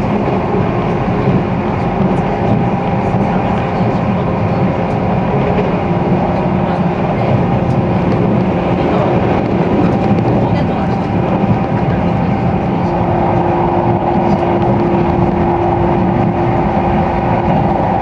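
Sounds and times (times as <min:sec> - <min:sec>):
train wheels rumbling on rail: 0:00.0 - 0:18.0.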